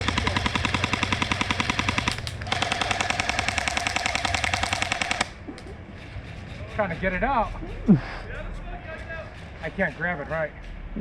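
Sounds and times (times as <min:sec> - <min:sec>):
airsoft guns firing bursts: 0:00.0 - 0:05.4.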